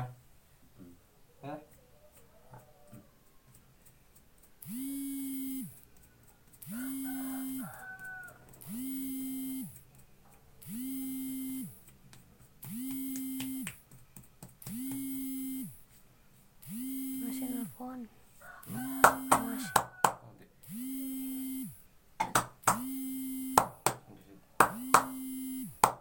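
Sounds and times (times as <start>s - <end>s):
phone ringing tone: 6.6s - 9.8s, 16.6s - 17.8s, 18.6s - 20.0s.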